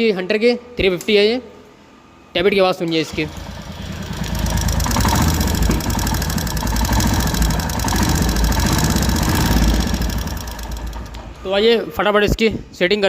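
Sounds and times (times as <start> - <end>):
rapid tappet ticking: 3.1 - 11.6
motorcycle engine idling: 3.1 - 11.7.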